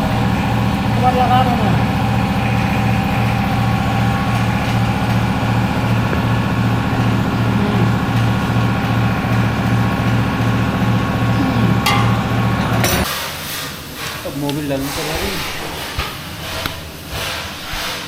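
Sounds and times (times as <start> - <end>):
engine throbbing steadily: 0.0 - 13.1.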